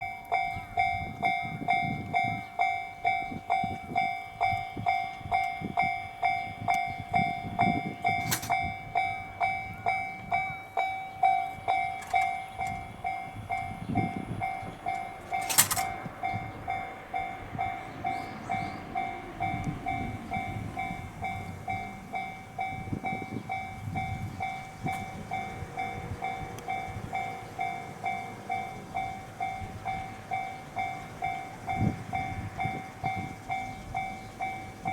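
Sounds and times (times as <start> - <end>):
level-crossing warning bell: 0.0 - 34.9.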